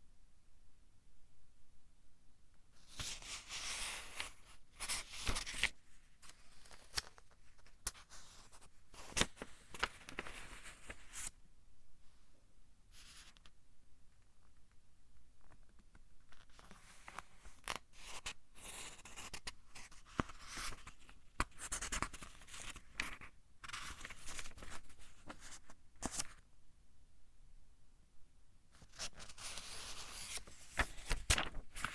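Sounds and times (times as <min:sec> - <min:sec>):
paper rustling: 0:02.8 - 0:11.3, 0:16.3 - 0:26.4, 0:28.8 - 0:31.9
paper crackling: 0:02.9 - 0:05.7, 0:28.9 - 0:31.9
book pages turning: 0:03.0 - 0:05.7, 0:20.2 - 0:26.4, 0:29.0 - 0:31.9.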